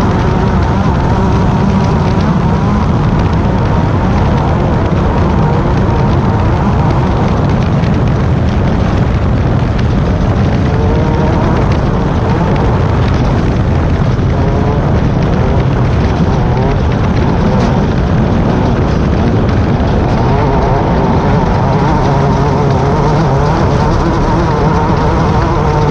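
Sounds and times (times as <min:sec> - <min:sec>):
race car engine running hard: 0:00.0 - 0:25.9.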